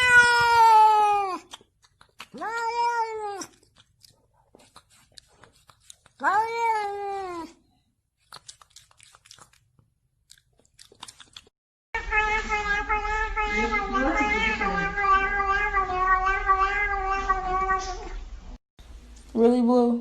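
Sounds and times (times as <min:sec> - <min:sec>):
cat meowing: 0:00.0 - 0:01.5, 0:02.3 - 0:03.6, 0:12.0 - 0:18.2.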